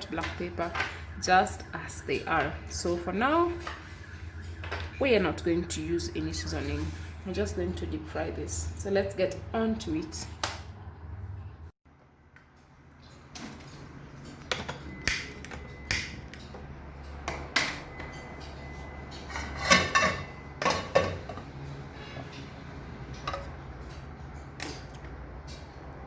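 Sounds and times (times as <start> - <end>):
cookware clattering: 19.2 - 21.5.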